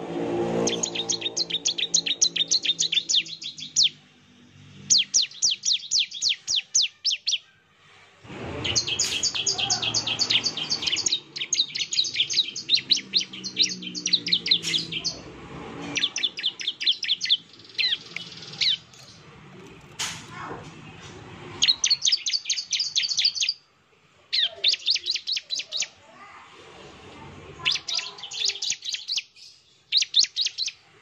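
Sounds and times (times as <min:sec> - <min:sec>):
bird singing high chirps: 0:00.6 - 0:07.6, 0:08.6 - 0:15.3, 0:15.9 - 0:19.3, 0:21.6 - 0:23.7, 0:24.3 - 0:26.0, 0:27.6 - 0:30.8.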